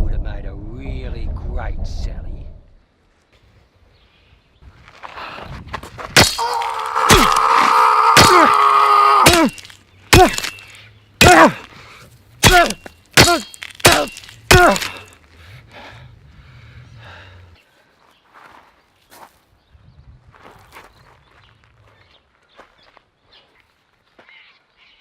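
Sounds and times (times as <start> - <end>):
hard blows: 6.1 - 11.8
person grunting: 6.4 - 9.5, 11.2 - 11.7, 12.4 - 14.9
person wailing cry: 6.4 - 9.5.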